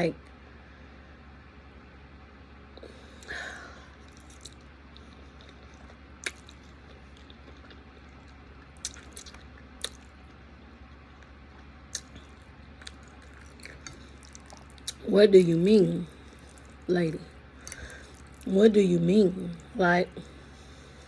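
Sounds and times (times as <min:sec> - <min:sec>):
person chewing wetly: 0:03.9 - 0:15.0, 0:16.1 - 0:18.5.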